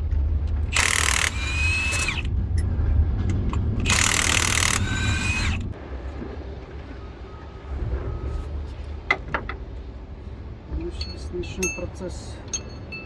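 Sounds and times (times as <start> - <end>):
impact wrench hammering: 0.7 - 2.3, 3.6 - 5.7
tool whine winding down: 0.7 - 2.3, 3.8 - 5.8.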